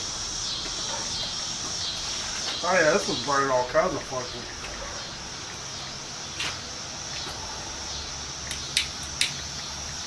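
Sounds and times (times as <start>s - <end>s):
insects chirring: 0.0s - 10.0s
sharp clicks: 8.5s - 9.5s.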